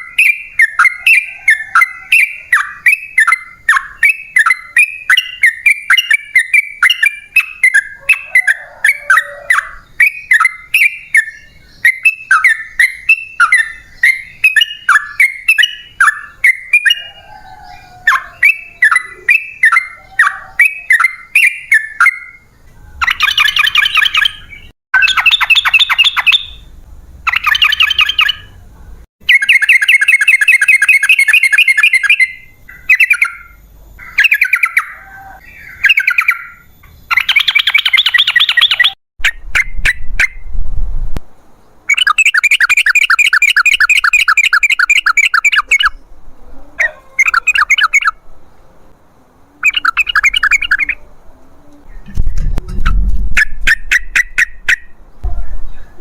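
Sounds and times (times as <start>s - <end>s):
bird chattering: 0.0s - 26.7s, 27.3s - 28.6s, 29.3s - 40.3s, 41.9s - 46.0s, 46.8s - 48.2s, 49.6s - 51.1s
bird singing bubbly notes: 49.6s - 51.0s.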